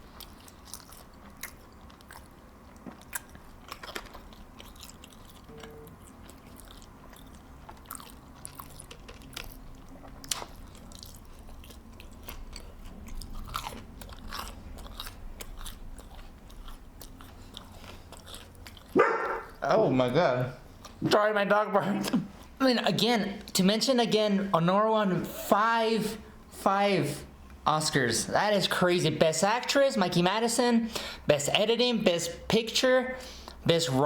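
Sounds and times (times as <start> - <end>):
food crunching: 0.0 - 19.6
person chewing food: 0.0 - 19.6, 20.6 - 21.0.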